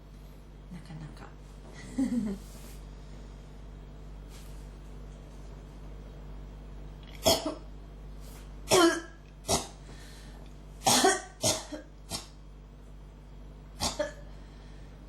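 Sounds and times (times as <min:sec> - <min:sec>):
faint steady hum: 0:00.0 - 0:15.0
person coughing: 0:07.2 - 0:07.7, 0:08.7 - 0:09.8, 0:10.8 - 0:12.4, 0:13.8 - 0:14.3.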